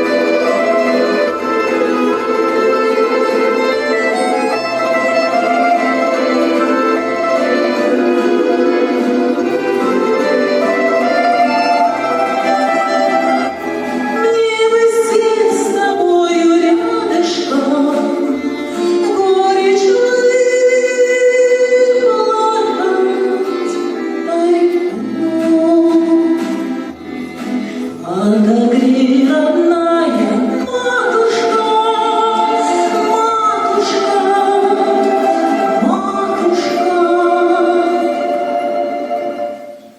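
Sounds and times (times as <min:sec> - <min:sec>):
instrumental accompaniment: 0:00.0 - 0:39.9
person singing: 0:27.9 - 0:39.8.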